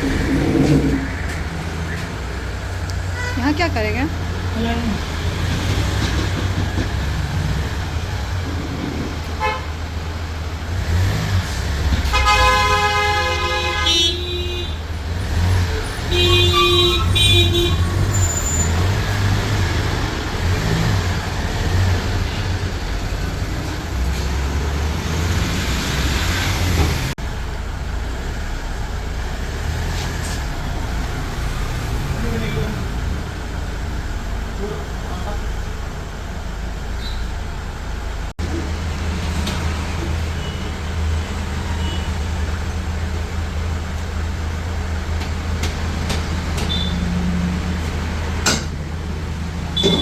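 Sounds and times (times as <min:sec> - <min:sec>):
road traffic rumble: 0:00.0 - 0:50.0
vehicle horns honking: 0:03.1 - 0:03.7, 0:09.4 - 0:09.8, 0:12.0 - 0:14.9, 0:16.0 - 0:18.8, 0:41.7 - 0:42.2, 0:46.6 - 0:47.2, 0:49.7 - 0:50.0.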